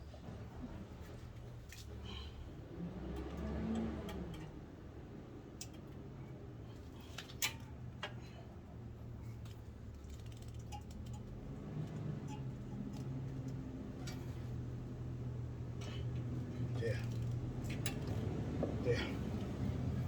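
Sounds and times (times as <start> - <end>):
light metallic clicks and taps: 5.5 - 6.1.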